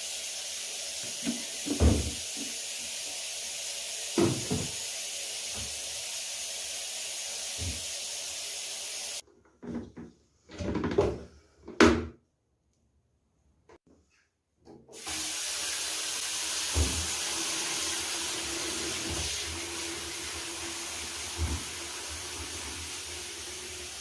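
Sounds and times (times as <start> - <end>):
water running from a tap: 0.0 - 9.2, 14.9 - 24.0.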